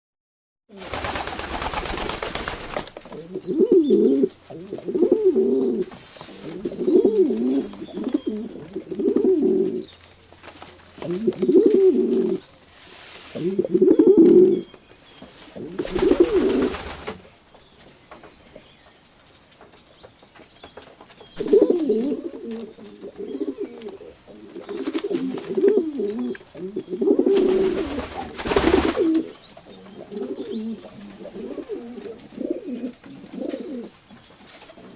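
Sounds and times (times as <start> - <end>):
pigeons cooing: 0.7 - 10.0, 11.0 - 12.5, 13.3 - 14.8, 15.5 - 17.2, 21.4 - 34.0.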